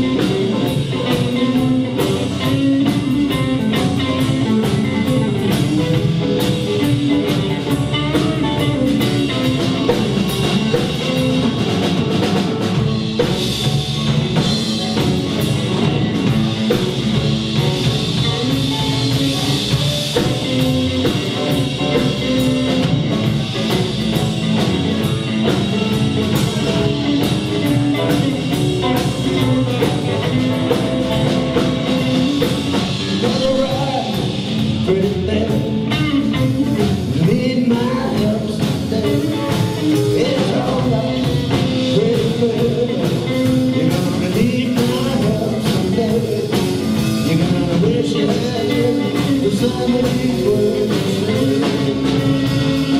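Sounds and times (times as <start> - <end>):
blues band playing live: 0.0 - 52.9
drum kit: 0.0 - 52.9.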